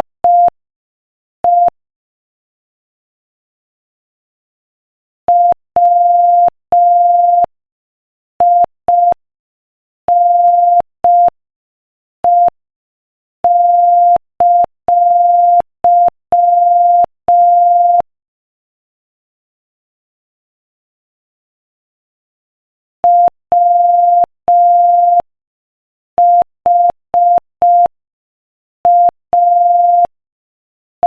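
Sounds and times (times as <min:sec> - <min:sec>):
morse code beeps: 0:05.3 - 0:07.5, 0:10.1 - 0:11.3, 0:13.5 - 0:18.0, 0:23.0 - 0:25.2, 0:26.2 - 0:27.9, 0:28.9 - 0:30.1.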